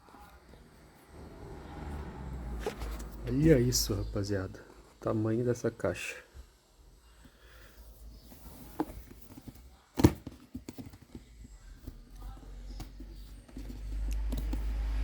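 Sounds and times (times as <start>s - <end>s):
low rumble: 0.6s - 4.2s.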